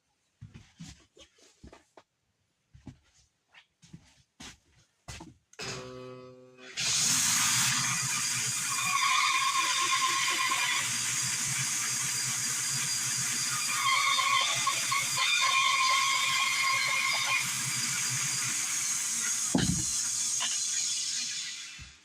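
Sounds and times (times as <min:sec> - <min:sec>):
power saw cutting wood: 0:05.6 - 0:22.0.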